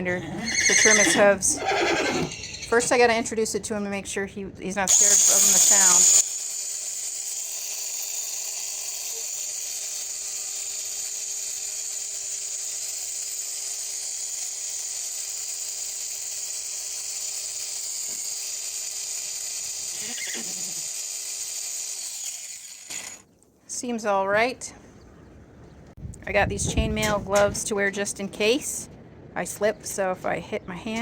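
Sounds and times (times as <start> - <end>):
angle grinder whining: 4.9 - 23.2.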